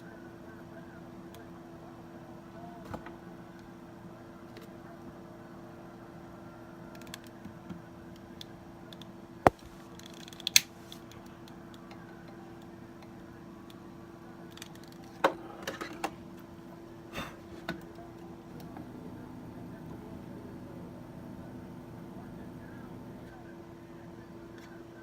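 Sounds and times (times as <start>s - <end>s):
sharp clicks from handling objects: 8.2s - 13.1s
steady low hum: 16.4s - 25.0s.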